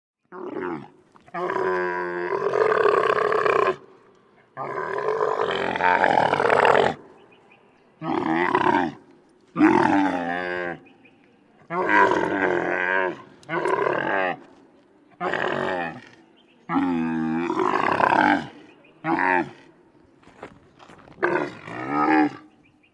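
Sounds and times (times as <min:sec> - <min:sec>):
camel grunting: 0:00.3 - 0:07.2, 0:11.6 - 0:14.5, 0:15.2 - 0:19.8, 0:20.8 - 0:22.6.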